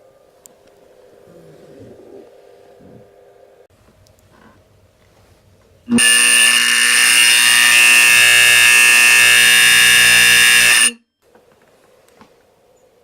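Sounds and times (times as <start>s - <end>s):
fire alarm horn blast: 5.9s - 11.0s.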